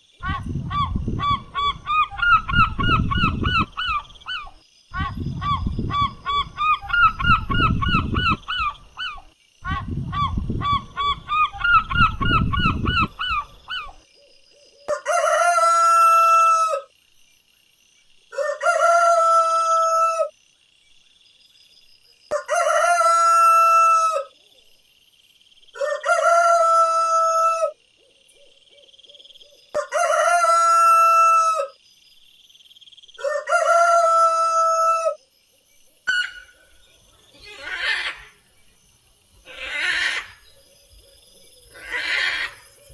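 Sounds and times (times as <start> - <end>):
rooster crowing: 14.9 - 16.9, 18.3 - 20.3, 22.3 - 24.3, 25.8 - 27.8, 29.8 - 31.7, 33.2 - 35.2.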